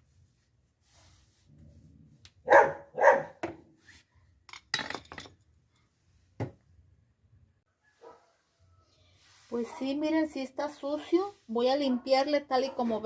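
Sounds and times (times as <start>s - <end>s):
dog barking: 2.4s - 3.4s, 7.9s - 8.4s, 11.9s - 13.0s.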